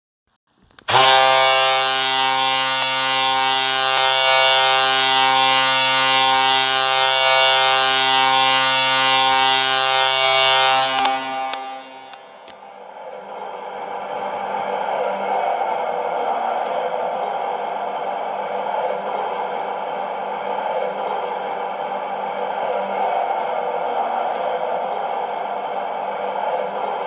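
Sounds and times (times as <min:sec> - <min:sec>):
hockey goal horn blast: 0:00.9 - 0:12.6.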